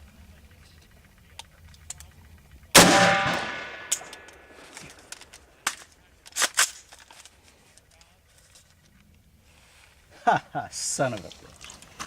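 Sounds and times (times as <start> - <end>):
rifle shot: 2.7 - 5.8.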